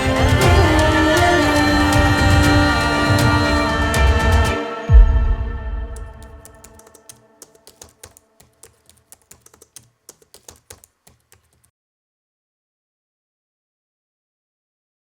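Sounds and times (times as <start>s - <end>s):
quick sharp clicks: 6.0s - 11.7s.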